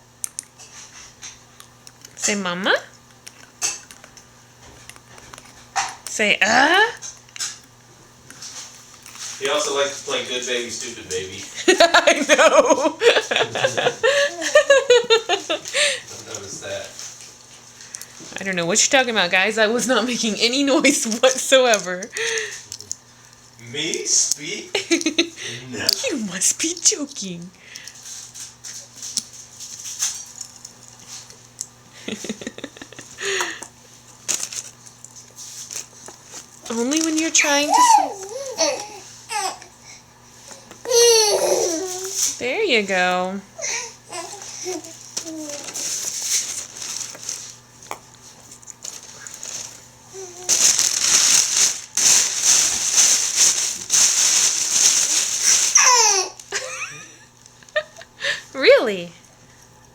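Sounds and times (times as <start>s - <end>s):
baby squealing: 37.6s - 39.6s, 55.7s - 56.4s.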